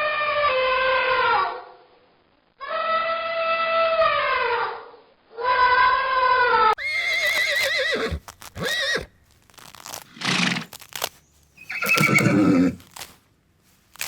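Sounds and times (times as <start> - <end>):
horse whinnying: 6.8 - 10.8, 11.6 - 13.1.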